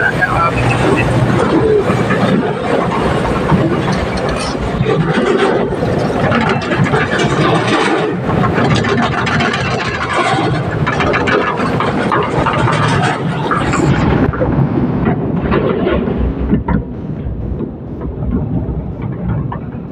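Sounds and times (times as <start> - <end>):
excavator engine running: 0.0 - 19.9
metallic rattling and clanking: 0.0 - 19.9.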